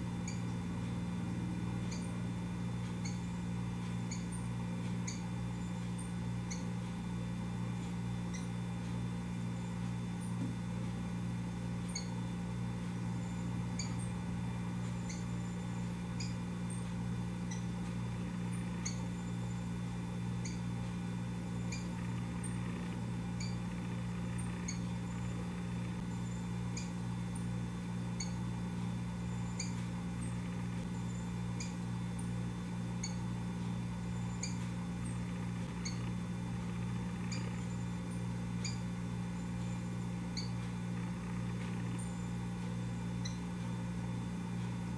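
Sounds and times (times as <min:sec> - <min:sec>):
steady low hum: 0:00.0 - 0:44.9
sparrow chip calls: 0:00.2 - 0:01.0, 0:01.8 - 0:02.2, 0:03.0 - 0:06.8, 0:11.8 - 0:12.3, 0:12.9 - 0:14.2, 0:14.8 - 0:17.7, 0:18.4 - 0:19.6, 0:20.4 - 0:20.7, 0:21.6 - 0:27.5, 0:29.2 - 0:32.3, 0:34.1 - 0:36.1, 0:37.1 - 0:40.7.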